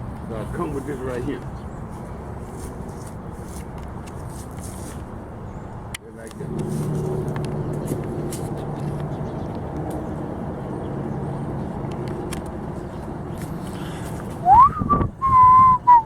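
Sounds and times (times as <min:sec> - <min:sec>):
person whistling: 0:14.4 - 0:16.0.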